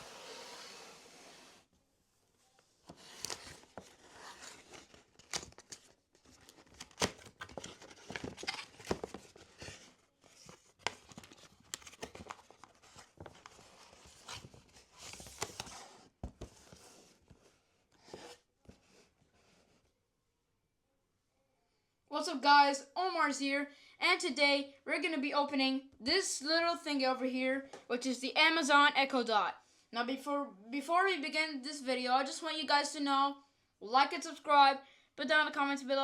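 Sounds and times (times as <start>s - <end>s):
rustling and scraping: 2.6s - 19.9s.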